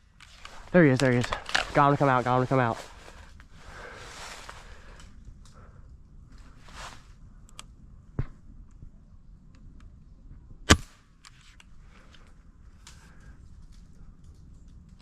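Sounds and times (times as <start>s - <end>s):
air rifle shot crack: 10.7s - 11.0s.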